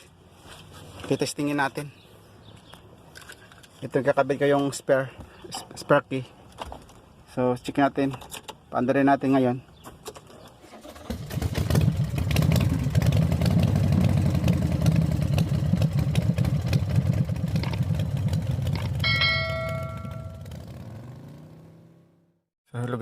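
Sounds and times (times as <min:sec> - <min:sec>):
truck engine cranking and idling: 0:10.6 - 0:20.9
electronic chime: 0:19.0 - 0:20.5.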